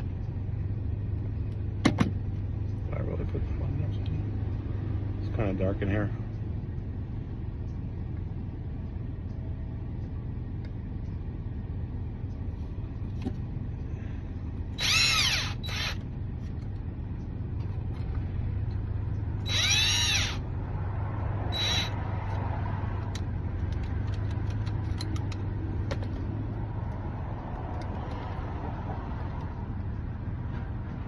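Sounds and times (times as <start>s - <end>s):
steady low hum: 0.0s - 31.0s
cordless drill whining: 14.8s - 16.0s, 19.4s - 20.4s, 21.5s - 22.0s.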